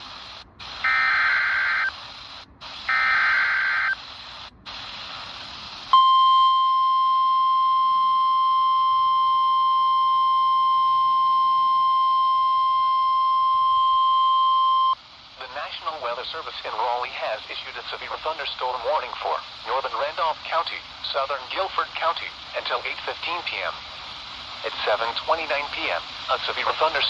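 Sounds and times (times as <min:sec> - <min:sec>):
static hiss: 0:00.0 - 0:27.0
steady alarm tone: 0:00.8 - 0:01.9, 0:02.9 - 0:04.0
digital warble bursts: 0:02.9 - 0:04.0.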